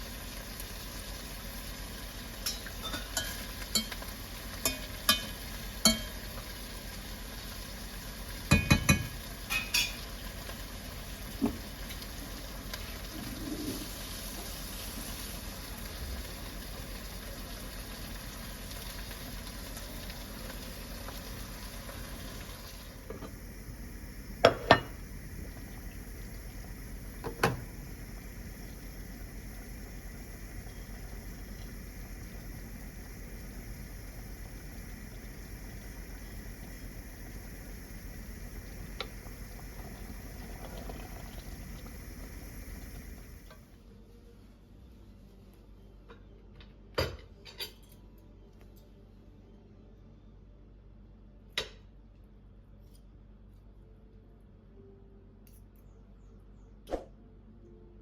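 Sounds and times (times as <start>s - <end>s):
steady hiss: 0.0s - 43.7s
metal utensils clinking on dishes: 2.4s - 4.0s, 47.4s - 48.0s.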